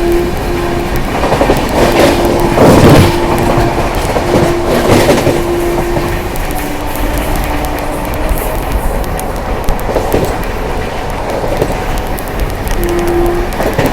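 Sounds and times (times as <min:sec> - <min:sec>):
train horn blasts: 0:00.0 - 0:13.9
train wheels clattering: 0:00.0 - 0:13.9.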